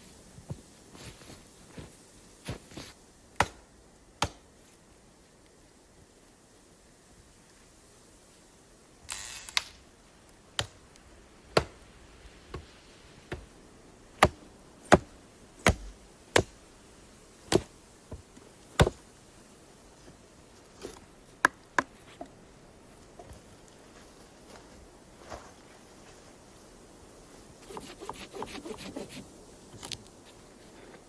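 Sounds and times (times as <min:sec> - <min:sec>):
short rustle: 0:00.0 - 0:03.0, 0:19.4 - 0:31.0
sharp chopping or knocking strikes: 0:03.4 - 0:03.6, 0:14.2 - 0:16.6, 0:17.5 - 0:17.7, 0:18.8 - 0:19.0.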